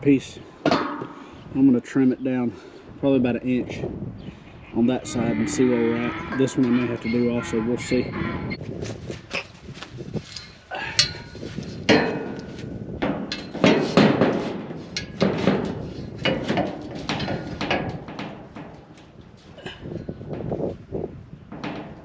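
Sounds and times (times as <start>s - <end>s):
tent poles knocking and clanking: 0.6s - 1.2s, 8.6s - 22.0s.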